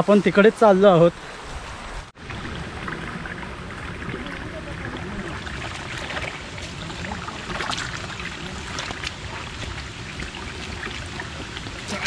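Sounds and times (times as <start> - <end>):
footsteps through wet undergrowth: 5.4 - 12.0.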